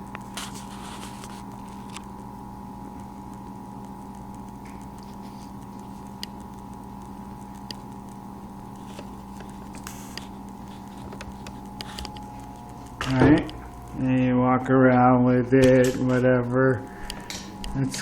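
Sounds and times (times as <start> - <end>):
electrical hum with whine: 0.0 - 18.0
camera handling rustle: 0.3 - 2.1, 8.8 - 13.1.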